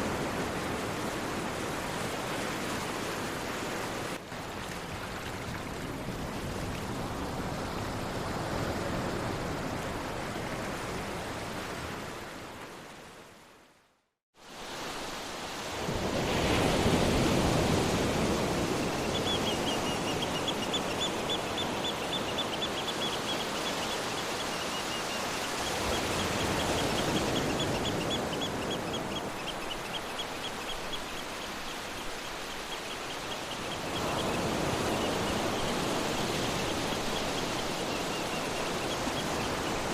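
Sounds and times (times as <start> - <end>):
sea surf hissing: 14.4 - 39.9.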